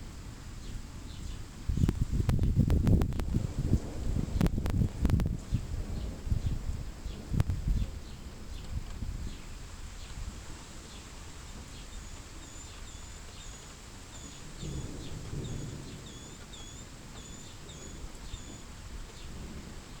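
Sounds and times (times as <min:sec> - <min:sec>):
outdoor background noise: 0:00.0 - 0:20.0
bird chirping: 0:10.8 - 0:19.4.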